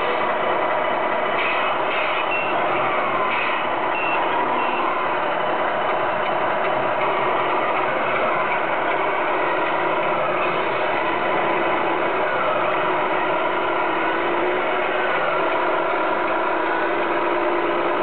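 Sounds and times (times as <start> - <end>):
electronic reversing beeps: 2.2 - 2.6, 3.9 - 5.1.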